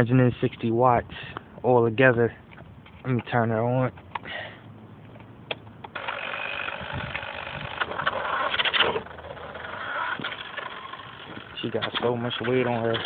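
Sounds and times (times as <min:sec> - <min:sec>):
toy car motor and gears whirring: 0:05.9 - 0:13.0.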